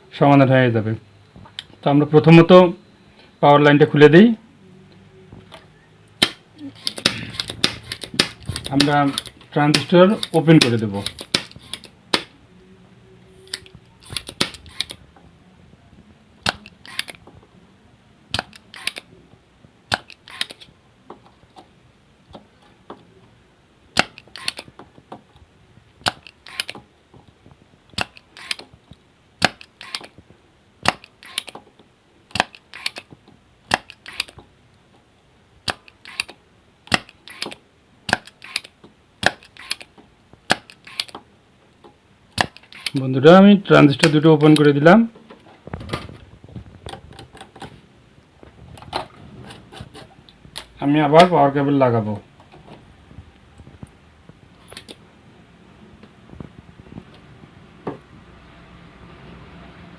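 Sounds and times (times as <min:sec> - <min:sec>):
tools clicking and snapping: 0:06.2 - 0:12.3, 0:13.5 - 0:15.0, 0:19.9 - 0:20.7, 0:24.0 - 0:24.8, 0:26.0 - 0:26.8, 0:29.4 - 0:30.2, 0:30.8 - 0:31.6, 0:32.3 - 0:34.4, 0:35.6 - 0:41.2, 0:42.4 - 0:43.0.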